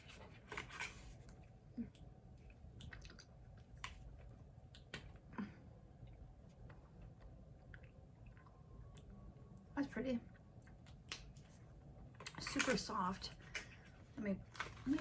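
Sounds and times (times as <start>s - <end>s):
faint clicks and handling noises: 10.6s - 15.0s.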